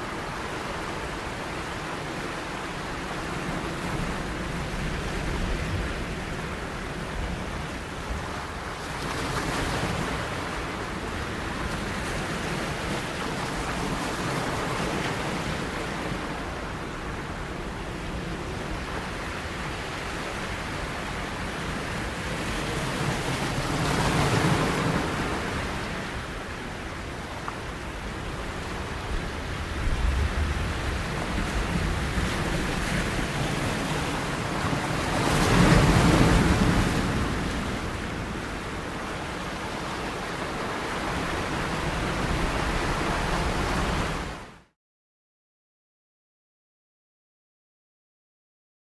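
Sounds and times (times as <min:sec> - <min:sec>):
surf rushing: 0:28.5 - 0:44.4.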